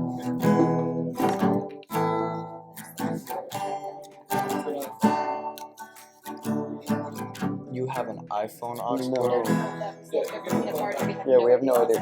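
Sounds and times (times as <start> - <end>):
acoustic guitar strummed loosely: 0.0 - 12.0.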